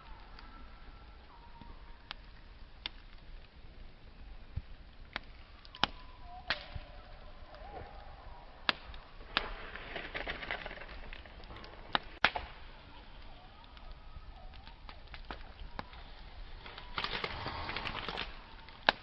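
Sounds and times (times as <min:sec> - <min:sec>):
burning wood popping: 0:00.0 - 0:19.0
campfire flame hissing: 0:00.0 - 0:19.0
faint wavering whistle: 0:00.1 - 0:02.1, 0:05.8 - 0:08.6.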